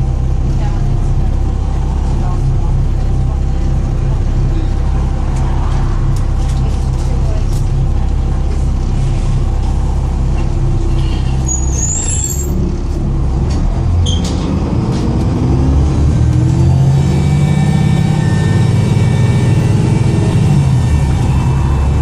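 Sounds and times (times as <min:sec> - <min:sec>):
bus diesel engine running: 0:00.0 - 0:22.0
short high squeaks: 0:11.1 - 0:12.6
turbo whine: 0:16.6 - 0:22.0.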